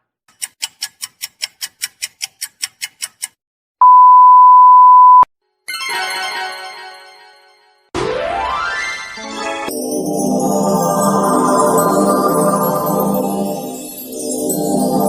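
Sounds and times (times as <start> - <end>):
quick ticks: 0.3 - 3.4
steady one-tone beep: 3.8 - 5.3.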